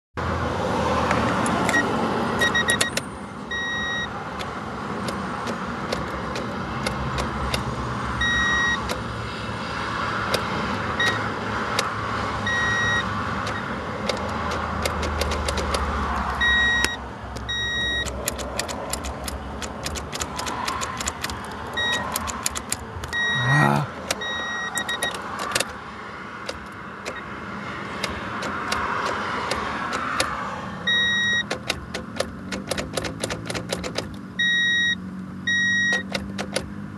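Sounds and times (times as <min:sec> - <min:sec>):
short beeps: 0:01.7 - 0:04.1, 0:08.2 - 0:08.8, 0:12.5 - 0:13.7, 0:16.4 - 0:18.1, 0:21.8 - 0:22.1, 0:23.1 - 0:25.2, 0:30.9 - 0:31.5, 0:34.4 - 0:36.1
starter rapid clicking: 0:13.4 - 0:15.9, 0:16.8 - 0:23.2, 0:24.0 - 0:25.8, 0:28.0 - 0:30.4, 0:31.4 - 0:34.2.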